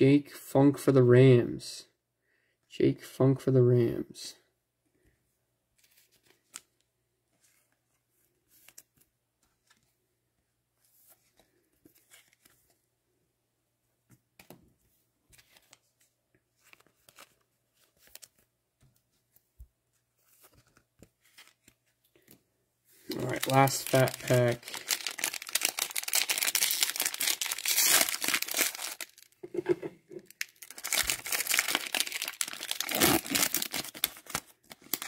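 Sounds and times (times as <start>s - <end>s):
cards and wrappers rustling: 11.1s - 12.8s, 15.3s - 22.4s, 23.0s - 29.4s, 30.2s - 35.0s
light wrapper tearing: 23.1s - 29.3s, 30.2s - 35.0s.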